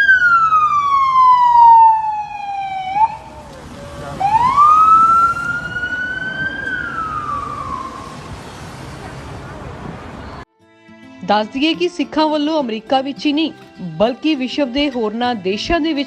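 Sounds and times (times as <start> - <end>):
police siren wailing: 0.0 - 8.8.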